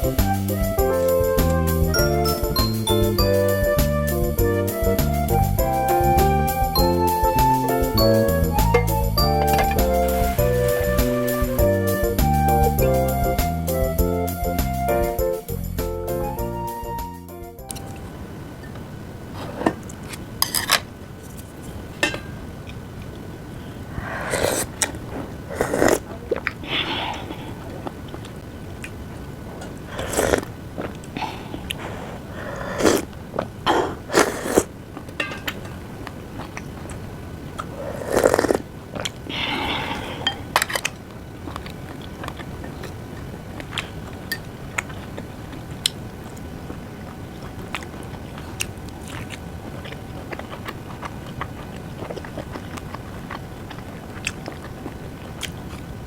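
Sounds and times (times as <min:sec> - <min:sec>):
chewing: 0:24.0 - 0:29.0, 0:29.6 - 0:56.0
utensils clicking on dishes: 0:35.2 - 0:35.8.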